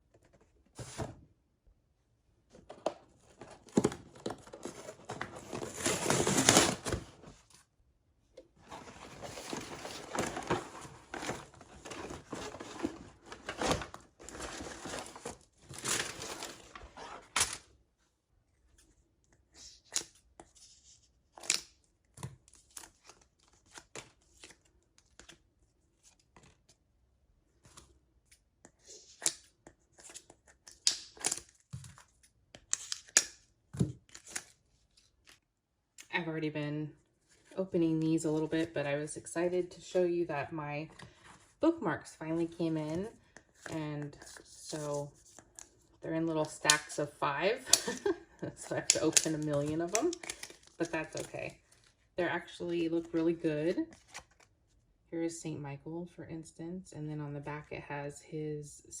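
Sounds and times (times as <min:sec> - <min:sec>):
packaging tearing and crinkling: 0:04.4 - 0:07.1, 0:08.9 - 0:17.6, 0:48.8 - 0:51.8.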